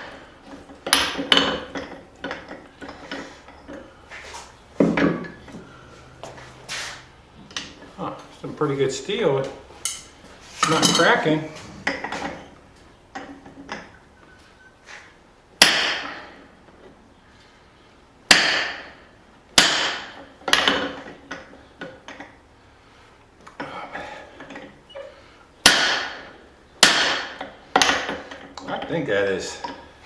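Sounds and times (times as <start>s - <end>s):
hammer striking steel on anvil: 15.6s - 16.2s, 18.3s - 18.8s, 19.6s - 20.2s, 25.6s - 28.0s.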